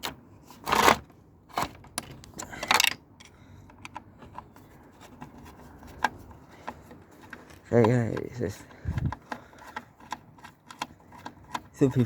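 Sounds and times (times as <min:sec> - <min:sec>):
screwdriver scrape: 0:00.5 - 0:03.0
screwdriver clicking on plastic: 0:05.9 - 0:12.0.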